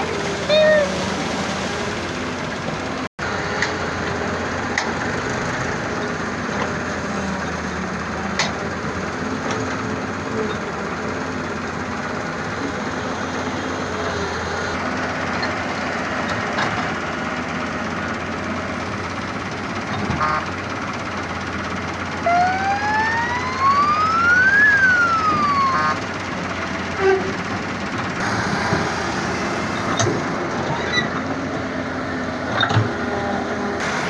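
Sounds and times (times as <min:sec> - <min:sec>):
heavy machinery running: 0:00.0 - 0:34.0
siren-like wail: 0:22.2 - 0:26.2.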